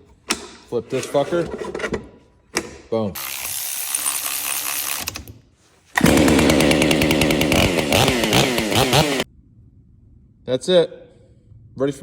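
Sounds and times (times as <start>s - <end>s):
chainsaw engine revving: 6.0s - 9.3s.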